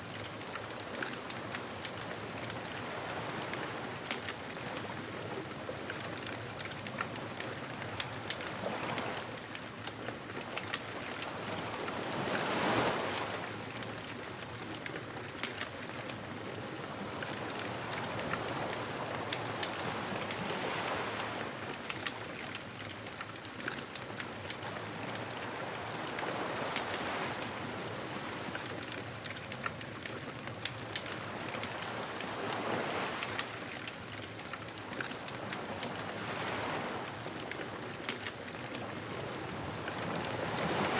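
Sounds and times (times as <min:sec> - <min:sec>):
ocean waves washing in: 0:10.6 - 0:23.4, 0:29.8 - 0:40.9
wood fire crackling: 0:13.9 - 0:24.9, 0:28.2 - 0:40.9.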